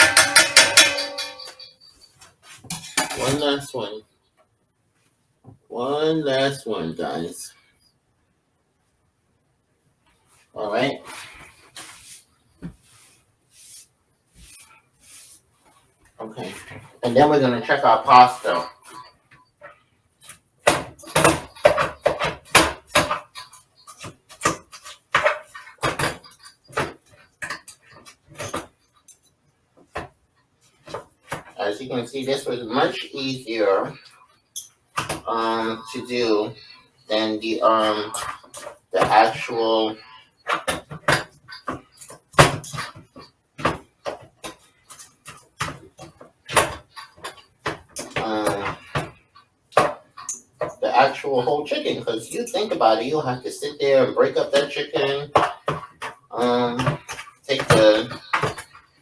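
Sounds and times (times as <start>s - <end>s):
utensils and dishes knocking: 0.0s - 2.1s, 2.7s - 3.4s, 20.7s - 27.7s, 55.3s - 58.8s
kitchen utensils clattering: 0.0s - 3.4s.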